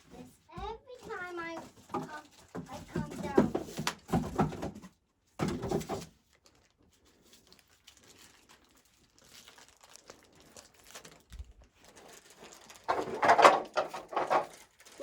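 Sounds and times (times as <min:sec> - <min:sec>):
packaging crinkling and tearing: 0:05.6 - 0:15.0.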